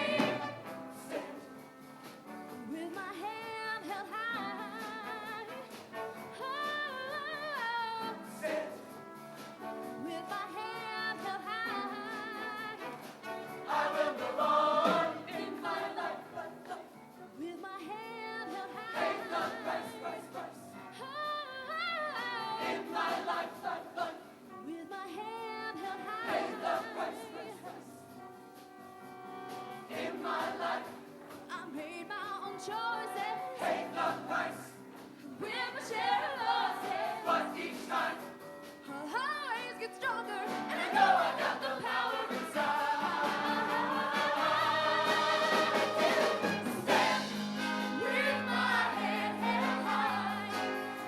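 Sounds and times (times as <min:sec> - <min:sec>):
choir singing: 0:00.0 - 0:01.9, 0:08.0 - 0:09.2, 0:10.0 - 0:17.2, 0:18.0 - 0:24.9, 0:25.7 - 0:28.1, 0:29.5 - 0:31.9, 0:32.6 - 0:38.5, 0:40.2 - 0:51.0
instrumental accompaniment: 0:00.0 - 0:02.8, 0:28.2 - 0:31.5, 0:40.4 - 0:51.0.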